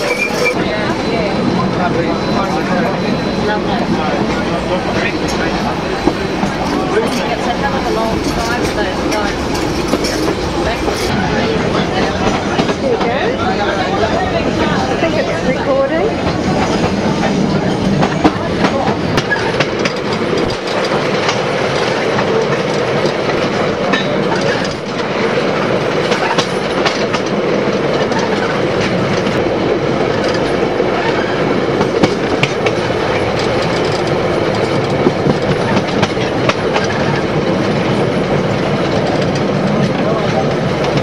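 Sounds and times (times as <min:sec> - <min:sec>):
train carriages rumbling: 0:00.0 - 0:41.0
wheels clicking over rail joints: 0:30.0 - 0:41.0.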